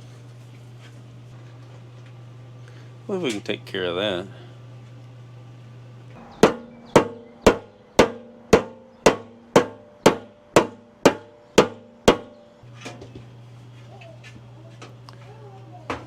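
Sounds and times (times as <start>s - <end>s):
hammer blows on metal: 6.2s - 12.5s.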